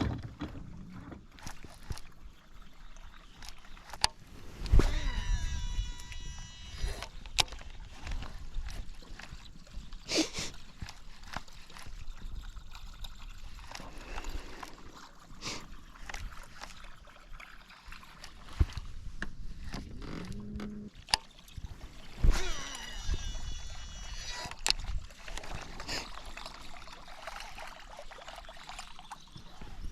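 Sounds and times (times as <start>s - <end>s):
wind rumbling on microphone: 4.2s - 9.7s, 21.6s - 25.7s.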